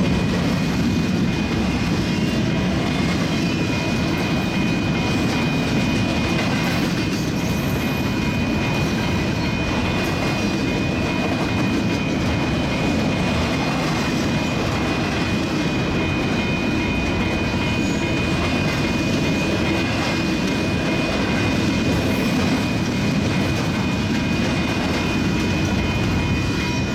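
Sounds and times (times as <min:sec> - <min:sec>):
freight train rumbling past: 0:00.0 - 0:26.9.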